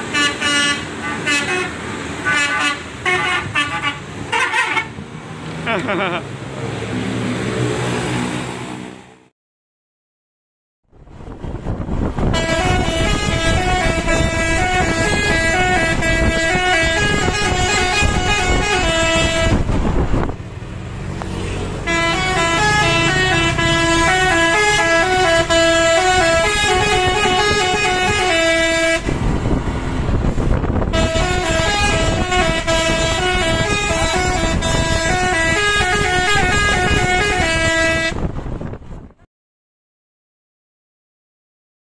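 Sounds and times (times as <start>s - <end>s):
musical bus horn melody: 0.0s - 5.0s, 12.2s - 19.9s, 21.8s - 29.2s, 30.9s - 38.4s
vehicle rumble: 0.0s - 9.3s, 10.9s - 39.3s.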